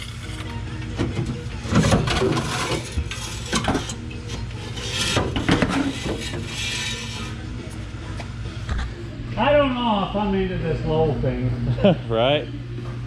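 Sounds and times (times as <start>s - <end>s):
objects rattling: 0.0s - 7.4s
metallic scraping and clinking: 0.0s - 7.9s
steady low hum: 0.0s - 13.0s.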